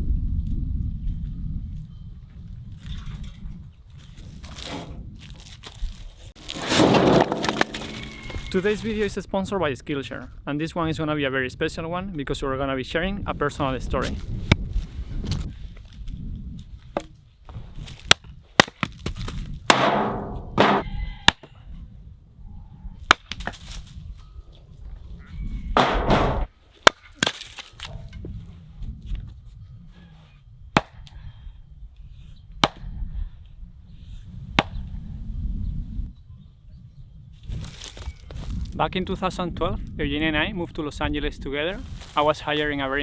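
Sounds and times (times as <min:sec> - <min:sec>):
rustling clatter: 0:04.2 - 0:09.1.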